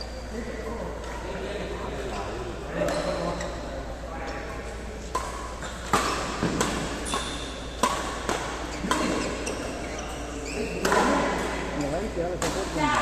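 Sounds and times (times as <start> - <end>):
badminton rackets hitting shuttlecock: 5.1 - 11.7.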